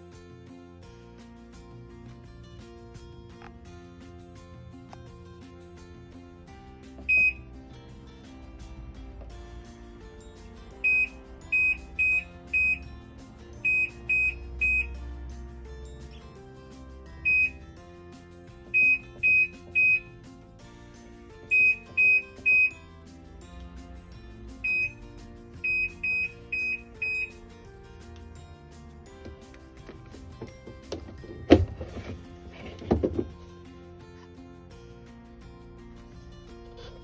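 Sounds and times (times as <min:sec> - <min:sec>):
background music: 0:00.0 - 0:37.0
washing machine control panel beeps: 0:07.0 - 0:07.4, 0:10.8 - 0:12.8, 0:13.6 - 0:14.9, 0:17.2 - 0:17.6, 0:18.7 - 0:20.1, 0:21.5 - 0:22.8, 0:24.6 - 0:25.0, 0:25.6 - 0:27.4.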